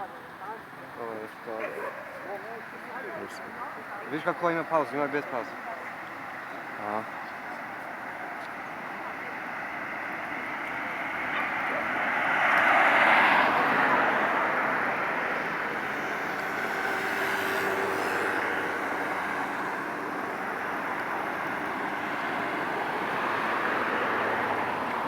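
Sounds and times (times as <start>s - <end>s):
traffic rumble: 0.0s - 25.0s
vehicle passing close by: 9.6s - 25.0s.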